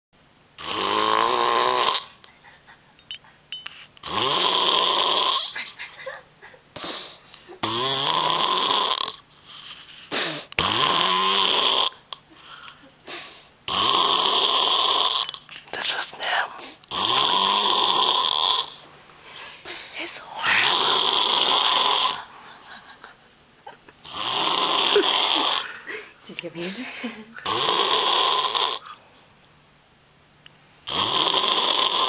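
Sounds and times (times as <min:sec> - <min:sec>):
man snoring loudly: 0:00.6 - 0:02.1, 0:04.0 - 0:05.6, 0:07.6 - 0:09.2, 0:10.1 - 0:12.0, 0:13.7 - 0:15.4, 0:16.9 - 0:18.8, 0:20.5 - 0:22.3, 0:24.0 - 0:25.8, 0:27.4 - 0:29.0, 0:30.9 - 0:32.0
quiet breathing: 0:12.3 - 0:13.7, 0:18.6 - 0:21.0.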